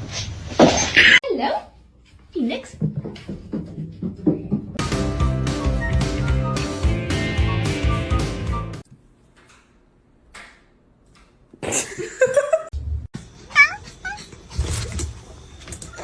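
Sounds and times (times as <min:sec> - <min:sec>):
background music: 0:04.8 - 0:08.8.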